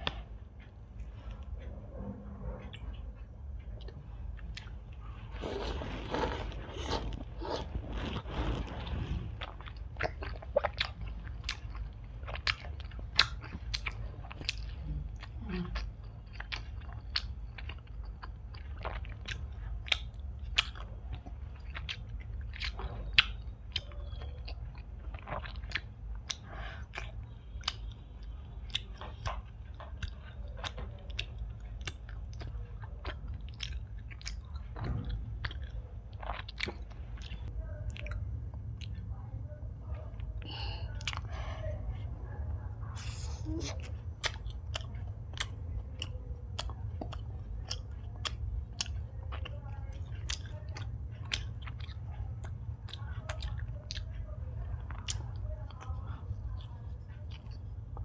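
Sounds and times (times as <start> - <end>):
steady low hum: 0.0 - 58.0
chewing mouth clicks and smacks: 9.4 - 39.2, 39.9 - 41.3, 43.0 - 58.0.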